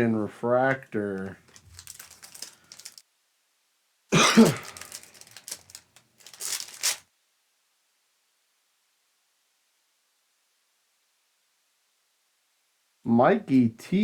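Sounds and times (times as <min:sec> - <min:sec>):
throat clearing: 0:04.2 - 0:05.0
person coughing: 0:04.2 - 0:05.1.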